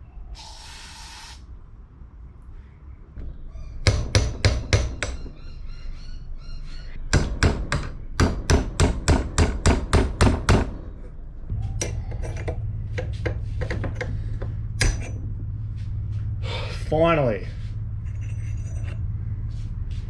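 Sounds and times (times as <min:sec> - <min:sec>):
hammer striking metal: 0:03.8 - 0:05.2, 0:07.1 - 0:10.8, 0:14.8 - 0:15.2.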